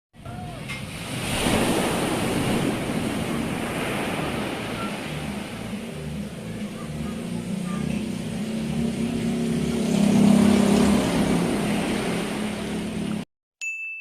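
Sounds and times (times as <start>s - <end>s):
road and wind noise: 0.2s - 13.2s
vehicle engine running: 4.2s - 13.2s.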